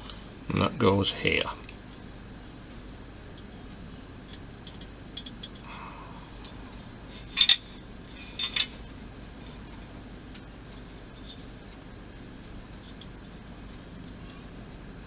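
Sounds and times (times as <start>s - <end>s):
sharp clinks: 7.2s - 8.8s
small plastic parts clicking: 7.2s - 8.8s.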